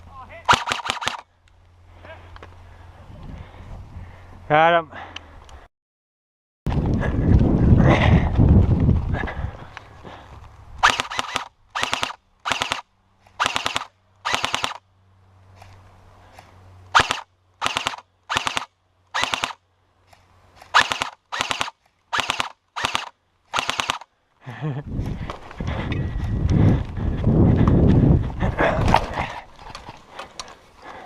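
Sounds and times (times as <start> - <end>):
airsoft gun firing bursts: 0.5 - 1.2, 10.8 - 12.8, 13.4 - 14.8, 17.0 - 19.6, 20.7 - 24.1.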